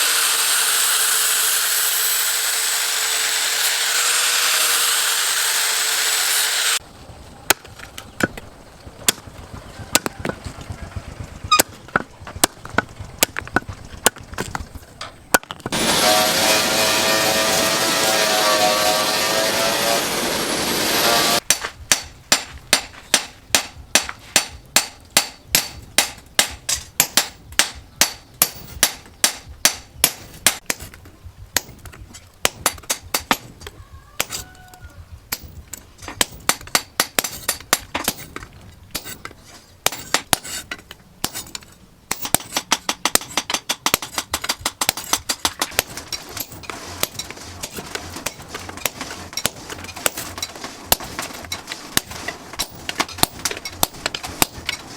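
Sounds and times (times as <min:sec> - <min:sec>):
hammer striking metal: 0:15.7 - 0:30.9.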